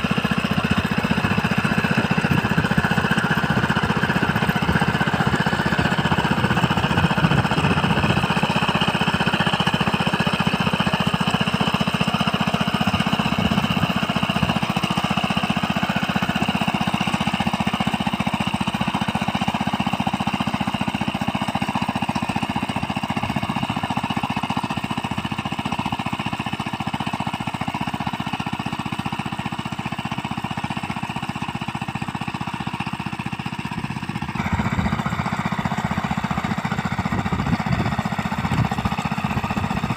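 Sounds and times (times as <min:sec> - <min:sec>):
small tiller engine running: 0:00.0 - 0:39.9.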